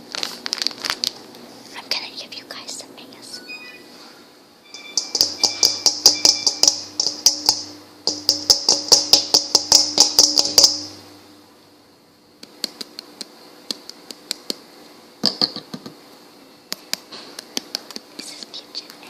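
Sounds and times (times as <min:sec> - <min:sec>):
faint ringing: 0:03.3 - 0:12.0.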